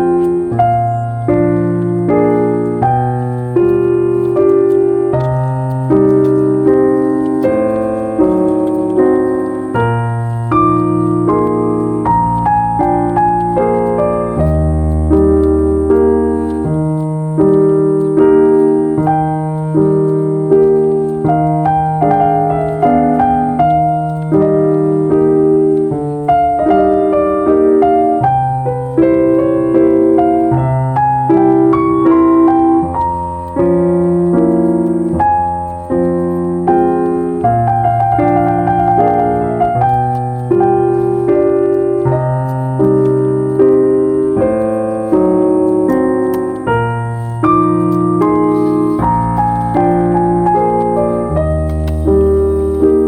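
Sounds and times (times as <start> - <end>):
piano music: 0.0 - 53.0.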